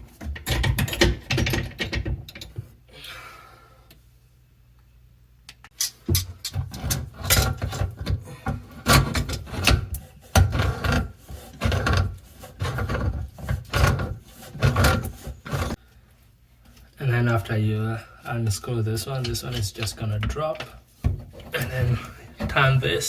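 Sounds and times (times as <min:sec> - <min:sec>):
rasping rubbing strokes: 0:09.4 - 0:15.8.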